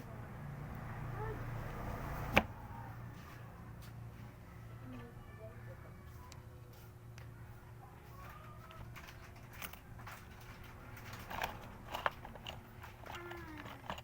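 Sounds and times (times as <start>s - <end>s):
small clicks and crackles: 8.0s - 14.0s.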